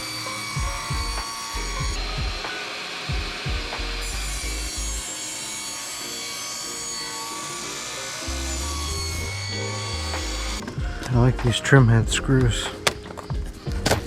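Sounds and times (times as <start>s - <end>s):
background music with bass beat: 0.0s - 5.0s, 8.3s - 14.0s
saw rasping through wood: 0.0s - 12.9s.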